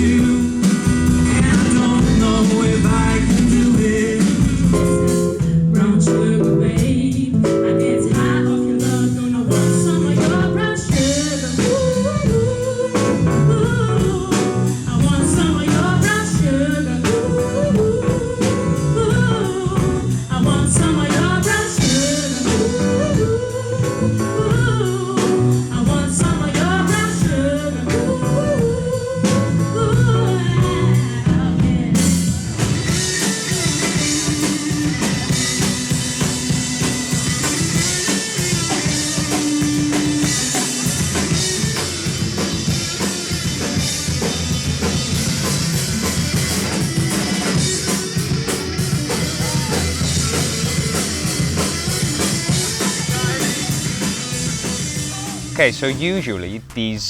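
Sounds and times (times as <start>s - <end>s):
person singing: 0.0s - 32.2s, 55.1s - 57.0s
rock band music: 0.0s - 57.0s.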